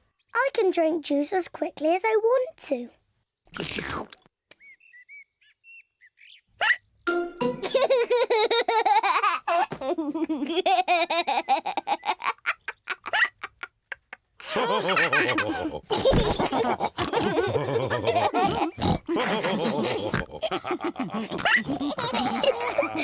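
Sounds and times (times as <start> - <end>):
cartoon characters laughing: 7.6 - 23.0.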